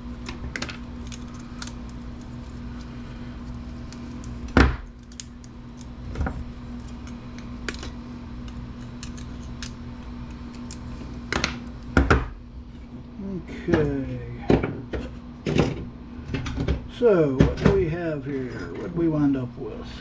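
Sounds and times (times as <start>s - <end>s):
steady low hum: 0.0s - 20.0s
light clicks and clinks of parts: 18.2s - 19.1s.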